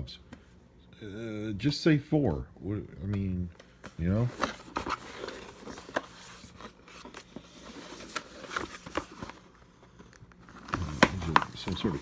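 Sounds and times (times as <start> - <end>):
packaging clicks and scrapes: 4.0 - 12.0.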